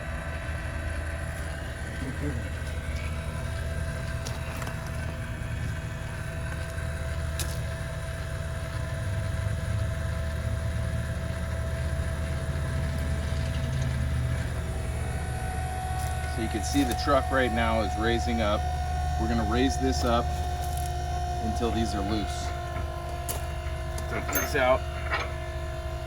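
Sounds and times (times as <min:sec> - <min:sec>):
electric jack motor whining: 0:00.0 - 0:07.8, 0:10.4 - 0:26.0.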